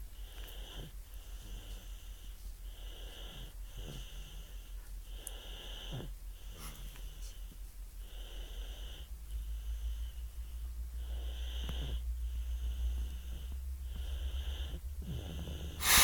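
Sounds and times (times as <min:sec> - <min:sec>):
wheezy whistling snoring: 0:15.1 - 0:16.0.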